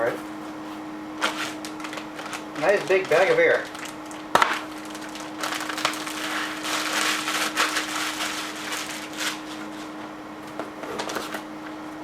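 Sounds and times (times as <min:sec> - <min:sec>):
faint electrical hum: 0:00.0 - 0:12.0
plastic packaging crinkling: 0:01.2 - 0:10.1, 0:10.8 - 0:11.5.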